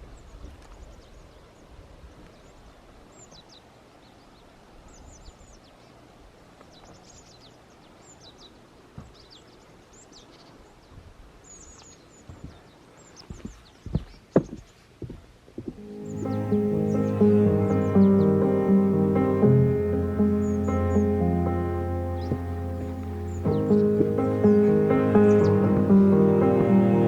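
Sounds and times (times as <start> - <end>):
small birds chirping: 6.7 - 27.0
low rumble of wind: 15.0 - 27.0.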